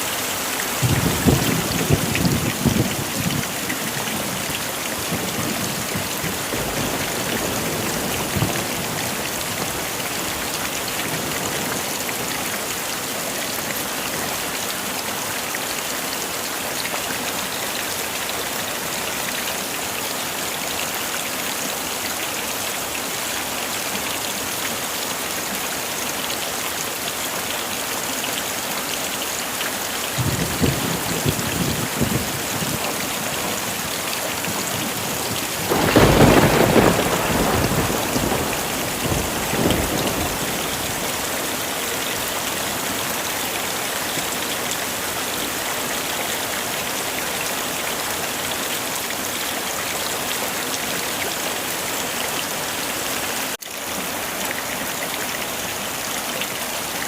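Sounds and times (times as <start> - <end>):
heavy rain: 0.0 - 57.0
thunder rolling: 30.2 - 32.8, 34.7 - 41.2.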